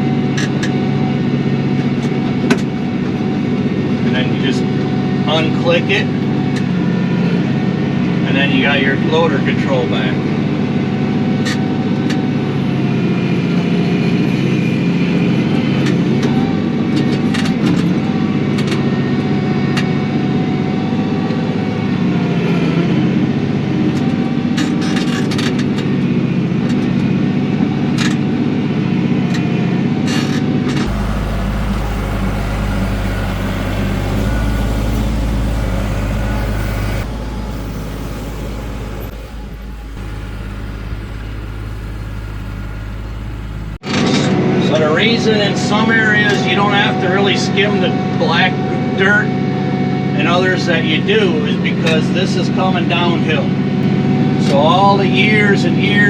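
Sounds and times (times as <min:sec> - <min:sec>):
tractor diesel engine running: 0:30.8 - 0:43.8.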